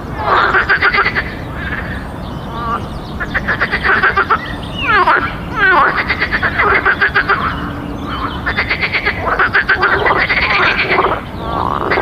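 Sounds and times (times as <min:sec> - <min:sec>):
frogs croaking: 0:00.0 - 0:12.0
frog trill: 0:00.2 - 0:12.0.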